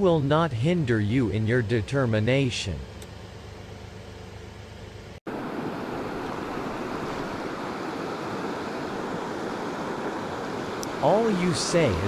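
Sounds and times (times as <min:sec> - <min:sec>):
mountain stream rushing: 0:05.3 - 0:12.0.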